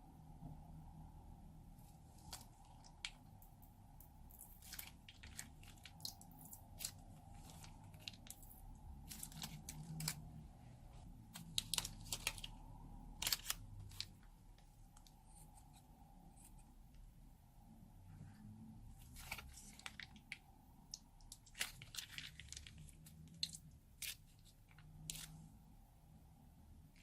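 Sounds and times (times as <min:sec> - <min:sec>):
slime crackling and popping: 0:02.2 - 0:10.3.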